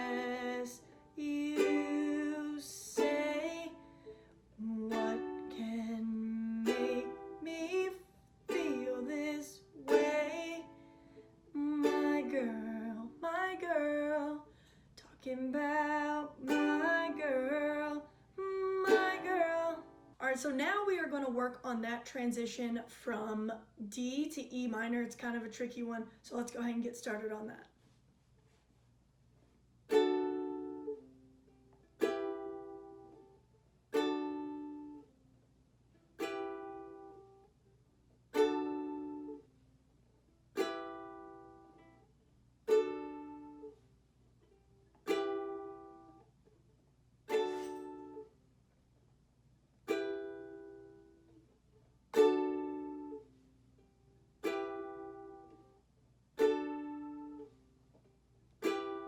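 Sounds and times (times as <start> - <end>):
ukulele chords strummed: 0.0 - 14.4, 15.2 - 21.5, 29.9 - 35.1, 35.9 - 37.6, 38.3 - 39.5, 40.5 - 43.8, 44.4 - 46.6, 47.2 - 48.4, 49.8 - 51.5, 52.1 - 59.0.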